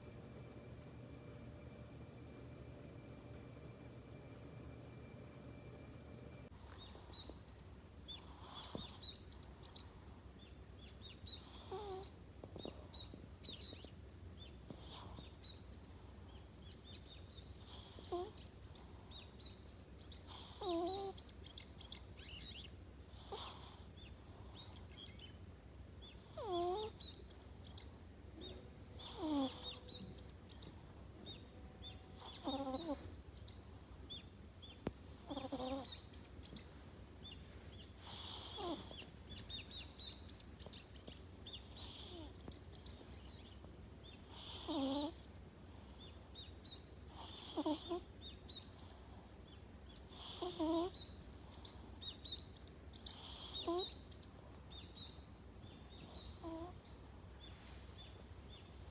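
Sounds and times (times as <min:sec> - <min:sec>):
cat snoring: 0:08.2 - 0:09.2, 0:11.4 - 0:12.8, 0:14.7 - 0:16.3, 0:17.5 - 0:19.1, 0:20.3 - 0:21.2, 0:23.1 - 0:24.6, 0:26.2 - 0:27.0, 0:29.0 - 0:30.8, 0:31.9 - 0:33.9, 0:35.1 - 0:36.2, 0:38.0 - 0:39.1, 0:41.7 - 0:43.1, 0:44.2 - 0:46.2, 0:47.1 - 0:49.1, 0:50.1 - 0:51.7, 0:53.1 - 0:54.1, 0:56.0 - 0:56.9.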